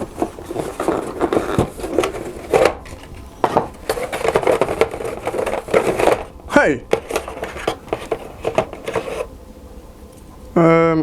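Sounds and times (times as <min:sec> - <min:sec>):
cardboard and plastic knocks and scrapes: 0:00.0 - 0:06.3, 0:06.9 - 0:09.3.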